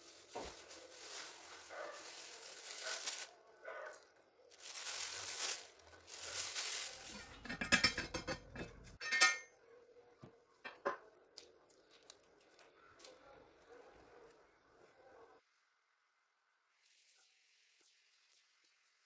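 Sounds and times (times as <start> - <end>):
utensils and dishes clattering: 7.0 - 9.6.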